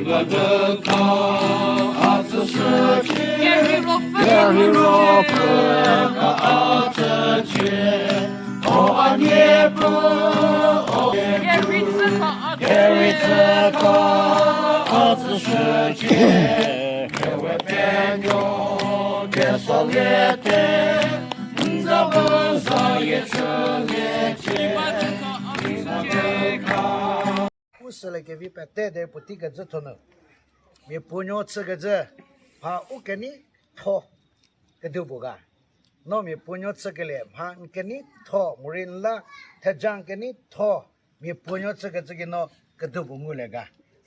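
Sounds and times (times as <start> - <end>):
group of people singing: 0.0 - 27.5.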